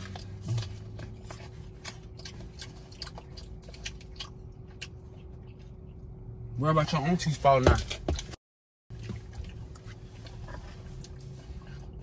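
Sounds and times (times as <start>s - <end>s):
person chewing food: 0.0s - 6.2s
steady low hum: 0.0s - 12.0s.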